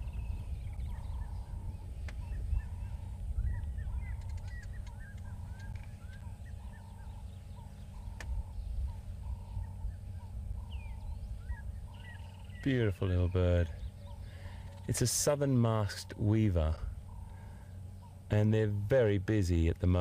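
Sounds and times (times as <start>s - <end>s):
steady low rumble: 0.0s - 20.0s
weaver birds chirping: 0.0s - 20.0s.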